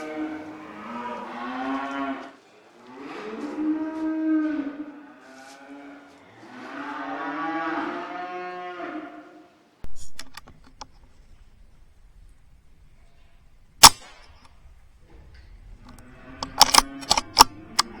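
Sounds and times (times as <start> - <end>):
cow mooing: 0.0 - 9.4, 15.1 - 18.0
loud sharp crack: 9.9 - 14.9, 15.9 - 18.0
faint clicks: 9.9 - 18.0.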